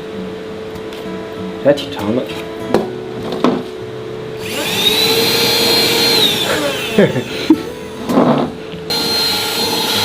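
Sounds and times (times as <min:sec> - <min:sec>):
handheld vacuum motor whining: 0:04.4 - 0:10.0.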